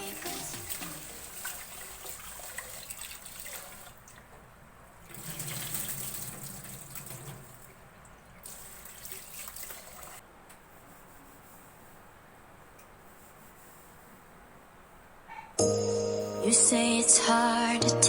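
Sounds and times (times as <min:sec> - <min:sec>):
tap water running into sink: 0:00.0 - 0:04.4, 0:05.0 - 0:10.2.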